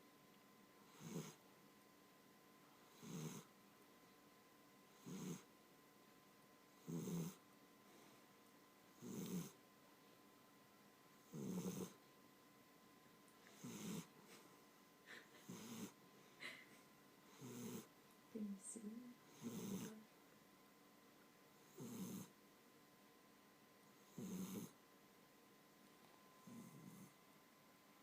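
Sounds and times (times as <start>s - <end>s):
pet snoring softly: 0.8s - 1.4s, 2.8s - 3.5s, 4.9s - 5.5s, 6.8s - 8.2s, 8.9s - 9.6s, 11.2s - 12.0s, 13.4s - 14.2s, 15.4s - 16.0s, 17.3s - 17.9s, 19.1s - 20.0s, 21.6s - 22.4s, 23.9s - 24.8s, 26.4s - 27.2s.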